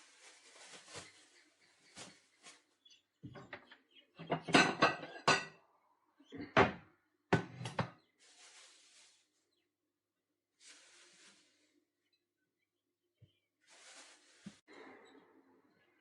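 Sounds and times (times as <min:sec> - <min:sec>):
plastic bag crinkling: 0:00.0 - 0:01.4.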